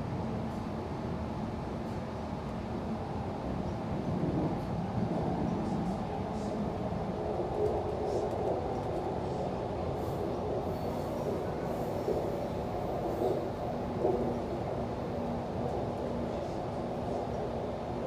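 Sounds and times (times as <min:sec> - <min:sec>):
train wheels rumbling on rails: 0:10.0 - 0:18.0.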